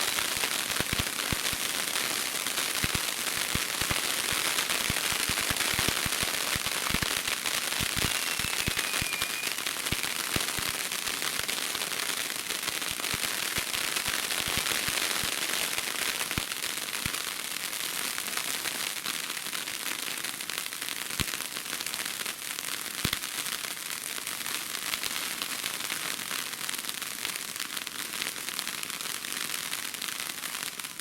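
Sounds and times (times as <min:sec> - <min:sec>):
sharp firework pops: 0:00.0 - 0:17.3, 0:23.0 - 0:23.4
fireworks crackling: 0:00.0 - 0:31.0.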